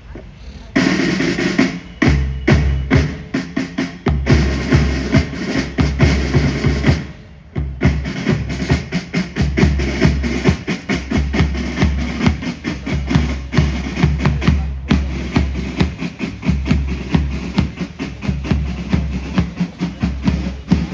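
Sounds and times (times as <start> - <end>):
rapid drum strokes: 0.2 - 20.9
bass drum beats: 0.8 - 20.9
military band playing: 0.8 - 20.9.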